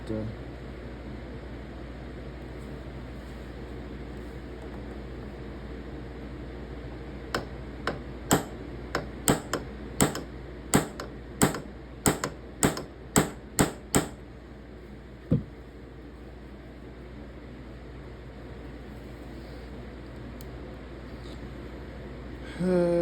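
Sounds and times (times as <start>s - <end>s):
hammer tapping on brass pin: 7.4s - 14.2s.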